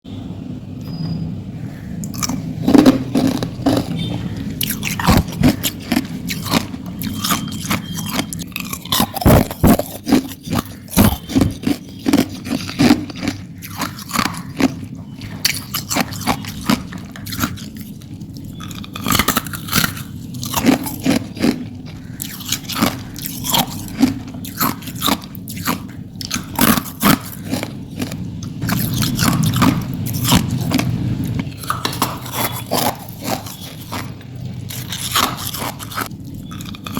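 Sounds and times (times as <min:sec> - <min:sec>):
crunching ice chewing: 0:02.0 - 0:36.9.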